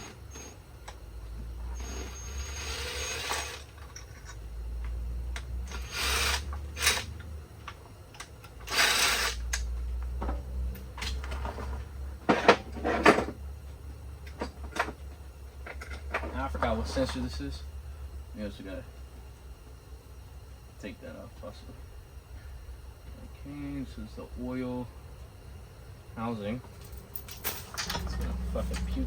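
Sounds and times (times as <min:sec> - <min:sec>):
steady low hum: 0:00.0 - 0:29.0
power tool bursts: 0:01.8 - 0:03.7, 0:05.7 - 0:07.1, 0:08.7 - 0:09.5
tools clanking on metal: 0:03.4 - 0:04.4, 0:26.7 - 0:29.0.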